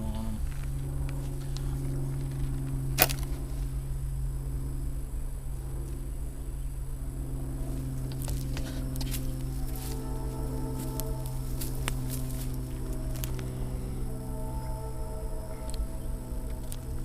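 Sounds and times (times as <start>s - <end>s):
chainsaw idling: 7.5s - 17.0s.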